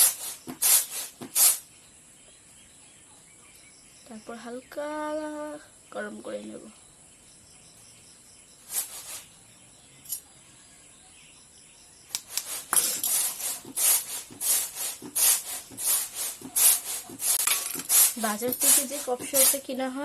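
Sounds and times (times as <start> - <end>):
small click: 12.1 - 12.5
utensil scraping a dish: 12.3 - 19.7.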